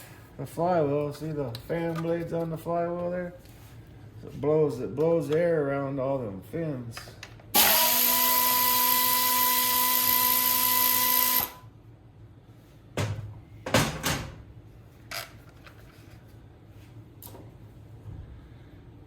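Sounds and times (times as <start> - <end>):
electric drill whining: 7.6 - 11.7.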